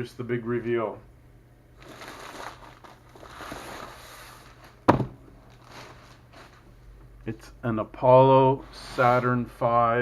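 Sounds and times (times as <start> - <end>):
box rustling and sliding: 1.9 - 4.8.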